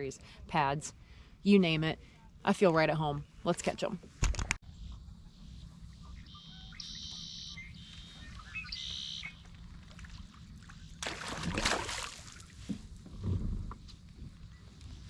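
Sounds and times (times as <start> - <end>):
water rushing and splashing: 11.0 - 12.5.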